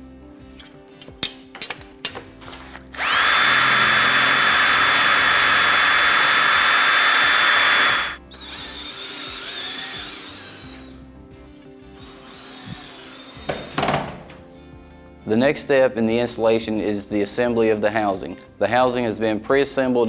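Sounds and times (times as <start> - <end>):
power drill whining: 2.4 - 11.1, 12.0 - 14.4.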